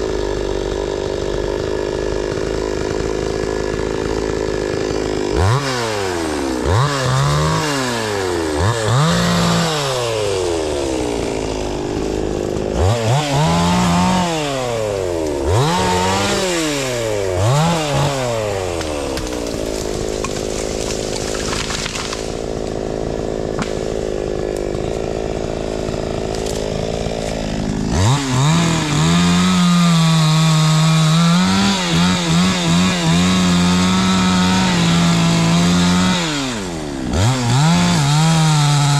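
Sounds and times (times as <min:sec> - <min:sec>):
chainsaw revving: 0:00.0 - 0:38.9.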